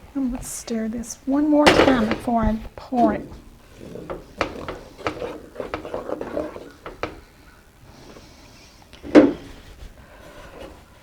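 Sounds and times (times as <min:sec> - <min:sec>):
spoon scraping a saucepan: 0:01.6 - 0:09.7.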